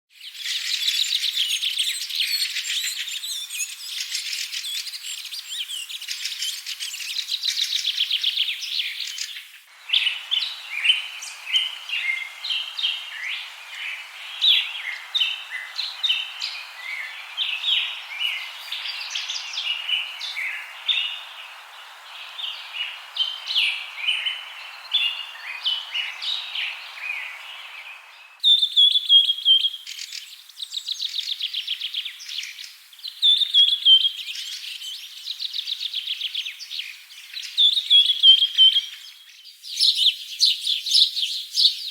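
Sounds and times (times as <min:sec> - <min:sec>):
songbirds chirping: 0:00.2 - 0:41.9
steady hiss: 0:02.4 - 0:28.5.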